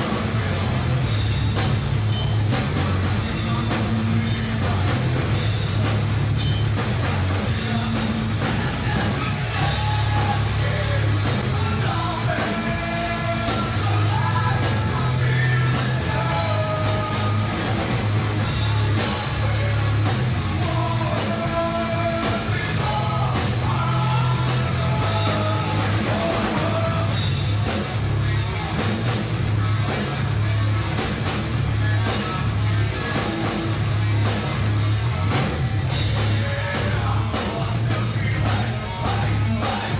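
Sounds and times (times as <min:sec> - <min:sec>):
metal band playing live: 0:00.0 - 0:39.9
person singing: 0:07.5 - 0:17.8, 0:18.4 - 0:27.3, 0:36.1 - 0:39.9.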